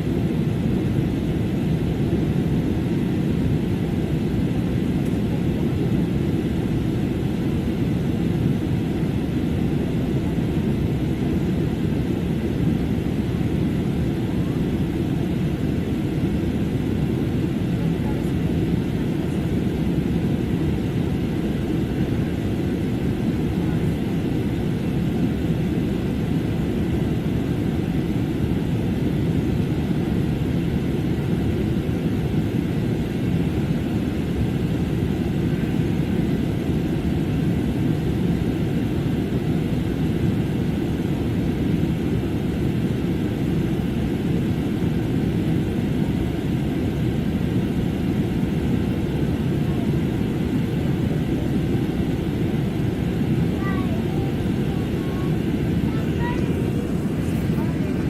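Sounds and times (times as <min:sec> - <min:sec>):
jet engines rumbling: 0:00.0 - 0:58.0
airflow past fuselage: 0:48.4 - 0:58.0.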